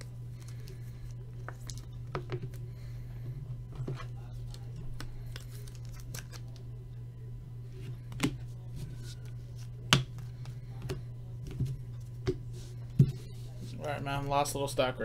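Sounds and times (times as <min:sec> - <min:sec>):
steady low hum: 0:00.0 - 0:15.0
cards clicking and tapping: 0:09.0 - 0:12.4.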